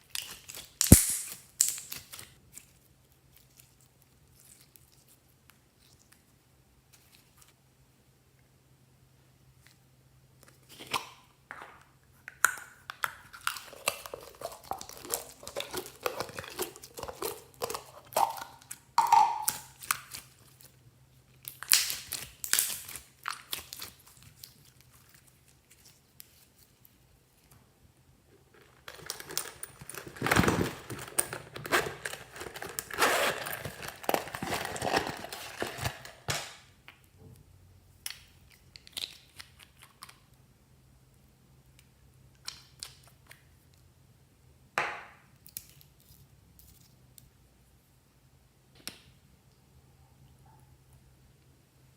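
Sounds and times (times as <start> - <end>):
slime crackling and popping: 0.1 - 2.4, 21.4 - 25.0.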